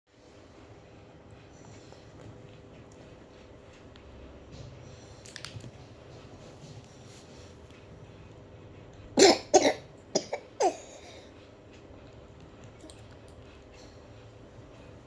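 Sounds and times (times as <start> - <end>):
person coughing: 9.2 - 11.3.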